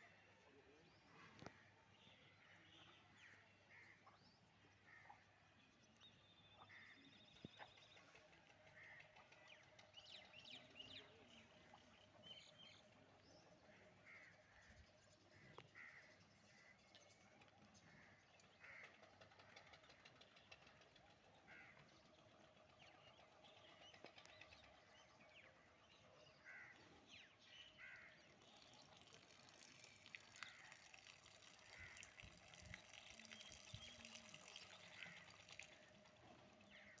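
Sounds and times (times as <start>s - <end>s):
small birds chirping: 21.5s - 37.0s.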